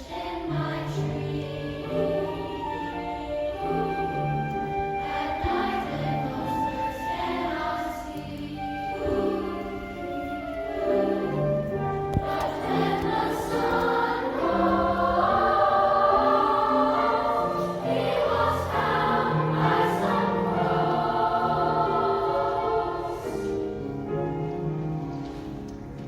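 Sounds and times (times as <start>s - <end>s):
children's chorus singing: 0.0s - 23.9s
piano: 0.0s - 26.0s
flute: 0.9s - 14.8s.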